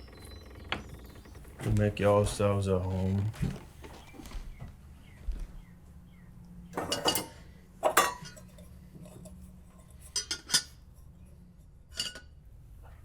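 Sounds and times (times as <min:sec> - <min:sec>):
metal dishes clinking: 0:06.8 - 0:09.3, 0:10.0 - 0:10.8, 0:11.9 - 0:12.3.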